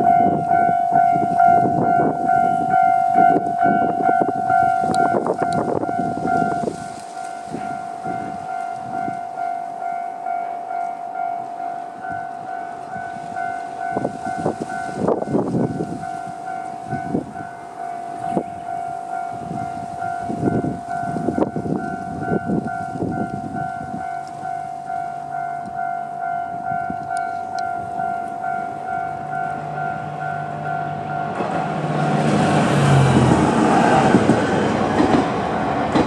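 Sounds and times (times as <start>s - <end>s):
level-crossing alarm ringing: 0.0s - 33.0s
train wheels knocking over rail joints: 31.3s - 36.0s.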